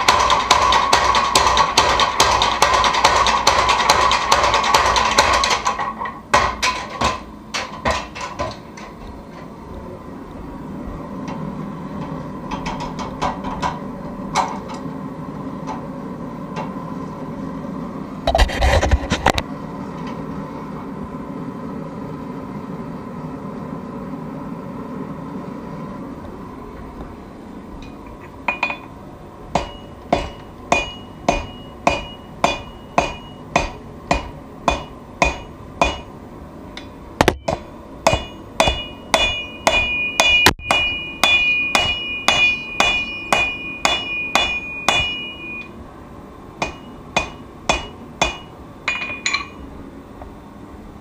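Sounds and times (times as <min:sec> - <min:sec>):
hammer ringing on anvil: 0:28.5 - 0:28.9, 0:29.6 - 0:36.2, 0:37.2 - 0:45.7, 0:46.6 - 0:49.6.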